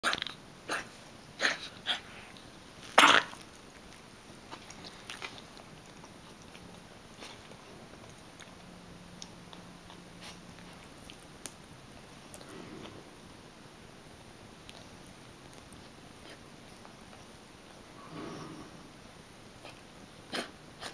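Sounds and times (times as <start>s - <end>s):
pet coughing: 0.0s - 2.1s, 3.0s - 3.4s, 19.6s - 20.9s.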